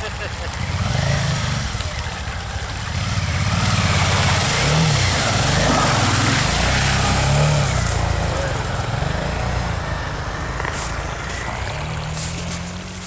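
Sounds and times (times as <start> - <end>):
motorcycle engine revving: 0.0 - 13.0
hiss: 10.4 - 13.0.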